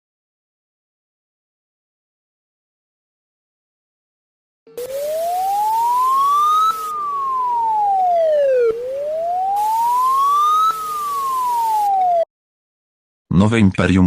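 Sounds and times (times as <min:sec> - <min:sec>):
wailing siren: 0:04.7 - 0:12.3.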